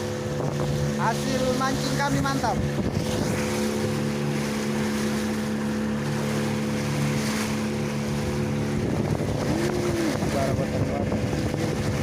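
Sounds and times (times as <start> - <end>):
boat engine drone: 0.0 - 12.0
water rushing: 0.0 - 12.0.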